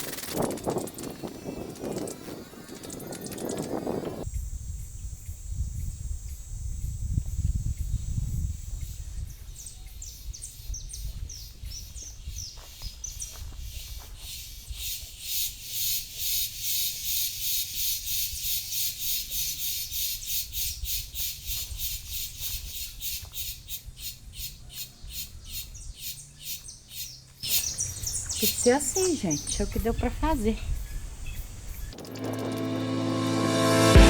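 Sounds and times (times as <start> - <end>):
birds chirping: 0.0 - 4.2, 7.6 - 34.0
fast sharp bird calls: 0.0 - 4.2, 12.4 - 33.1
low rumble: 31.8 - 34.0.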